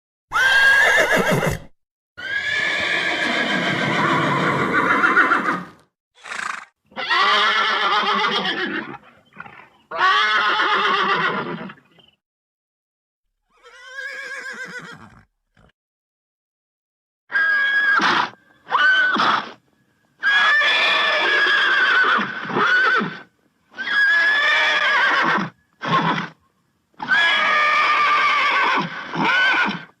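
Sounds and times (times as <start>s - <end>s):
horse whinnying: 0.3s - 11.8s, 13.5s - 15.7s, 17.3s - 19.6s, 20.2s - 26.4s, 27.0s - 29.9s.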